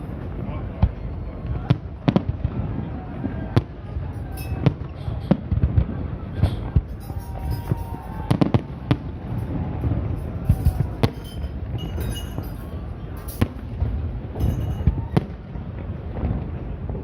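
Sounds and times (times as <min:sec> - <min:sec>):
rumble and crackle of fireworks: 0:00.0 - 0:17.0
firework shells bursting: 0:06.4 - 0:15.5.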